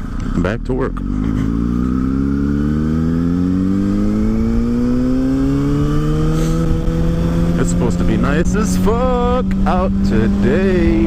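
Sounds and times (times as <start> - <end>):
motorcycle engine accelerating: 0.0 - 11.0.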